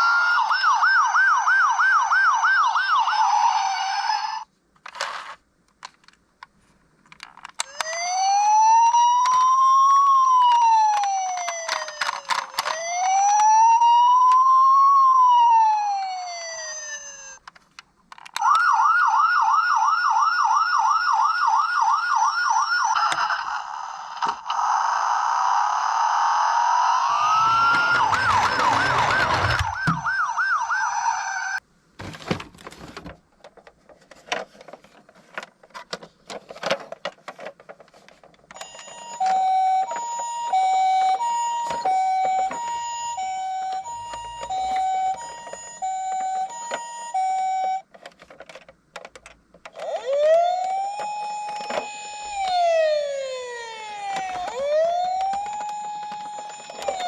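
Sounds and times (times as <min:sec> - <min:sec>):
toy siren wailing: 0:00.0 - 0:04.5, 0:07.6 - 0:17.4, 0:18.4 - 0:31.6, 0:38.6 - 0:47.9, 0:49.7 - 0:57.0
plastic clicks and clatter: 0:04.8 - 0:08.0, 0:09.1 - 0:13.6, 0:17.4 - 0:18.7, 0:32.0 - 0:42.8, 0:43.6 - 0:47.0, 0:47.8 - 0:52.6, 0:54.1 - 0:57.0.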